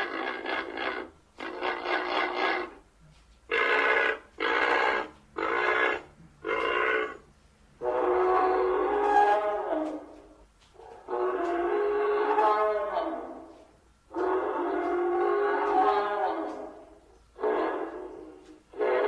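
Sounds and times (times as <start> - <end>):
loud honking creature calls: 3.5 - 7.2, 7.8 - 10.1, 14.1 - 19.0.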